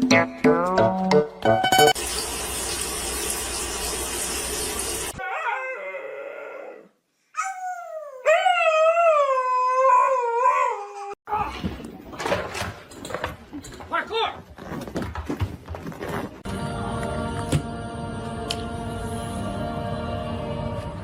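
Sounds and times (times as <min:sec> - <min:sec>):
dog howling: 0:05.2 - 0:11.2.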